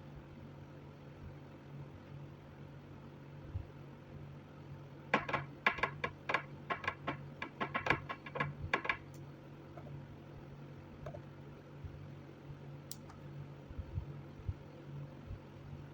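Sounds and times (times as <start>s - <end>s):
steady low hum: 0.0s - 15.9s
light sharp clicks: 12.9s - 13.2s.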